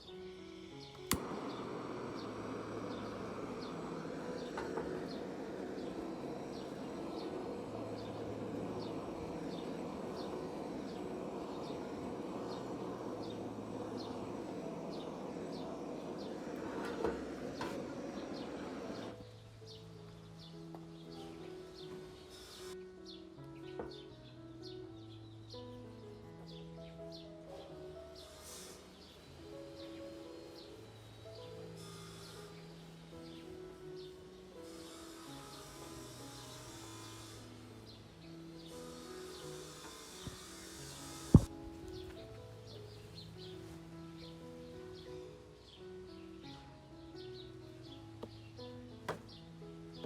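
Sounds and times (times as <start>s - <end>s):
soft background music: 0.0s - 50.0s
brief hiss: 0.8s - 7.3s, 28.2s - 29.6s, 31.6s - 32.7s
sharp knock: 41.3s - 41.5s.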